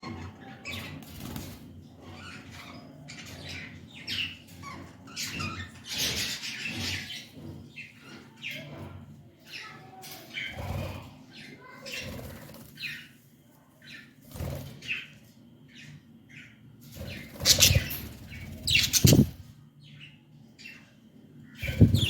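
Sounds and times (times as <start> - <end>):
budgerigars chirping: 17.1 - 19.4, 21.6 - 22.0.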